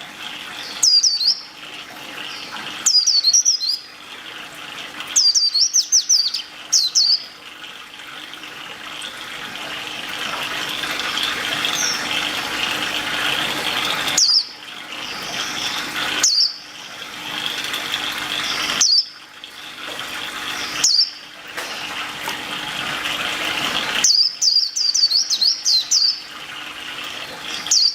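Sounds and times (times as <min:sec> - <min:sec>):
bird chirping: 0:00.7 - 0:01.5, 0:05.2 - 0:07.3, 0:14.2 - 0:14.5, 0:15.6 - 0:16.6, 0:18.4 - 0:19.1, 0:20.6 - 0:21.2, 0:24.0 - 0:26.2, 0:27.5 - 0:27.9.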